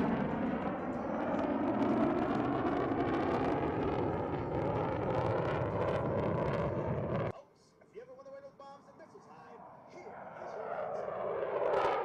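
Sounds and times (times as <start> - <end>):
jet engines rumbling: 0.0 - 7.3, 8.8 - 12.0.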